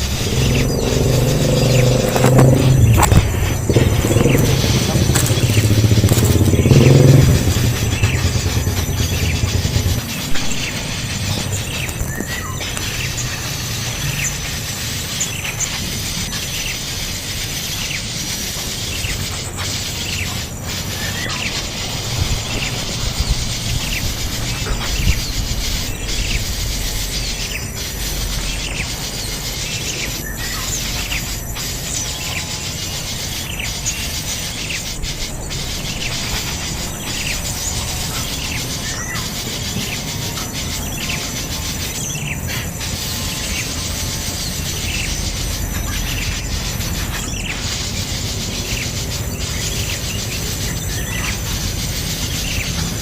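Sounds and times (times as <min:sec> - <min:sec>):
low rumble: 0:00.0 - 0:14.0
birds chirping: 0:00.0 - 0:53.0.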